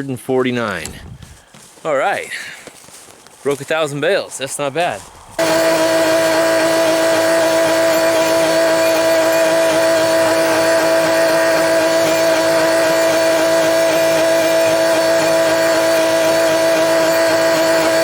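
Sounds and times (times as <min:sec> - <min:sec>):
tractor engine humming: 0:04.1 - 0:18.0.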